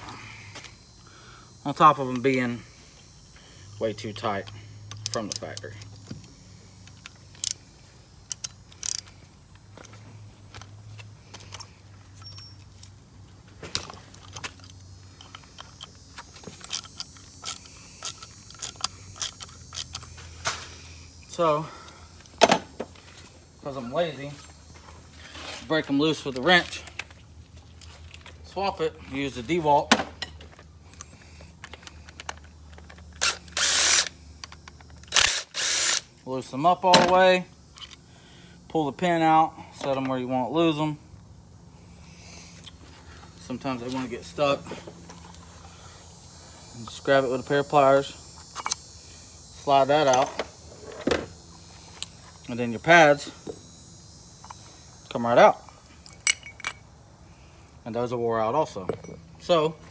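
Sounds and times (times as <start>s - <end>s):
low steady hum: 0.0s - 59.9s
metallic clicks of hand tools: 4.4s - 7.6s, 8.2s - 9.1s, 13.7s - 20.6s, 31.0s - 36.1s, 56.0s - 56.8s
driver bit clicks: 31.7s - 36.1s
cordless driver spinning: 32.8s - 34.2s, 34.9s - 36.1s.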